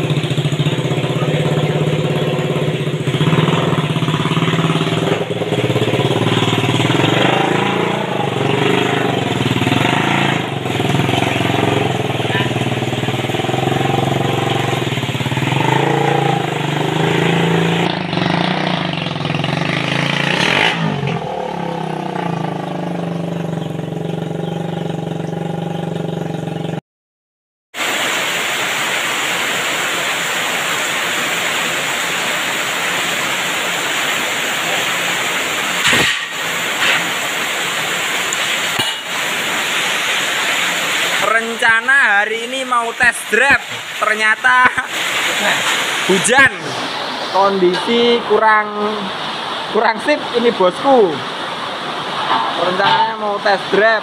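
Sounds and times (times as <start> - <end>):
motorcycle engine revving: 0.0 - 26.8, 30.8 - 42.3.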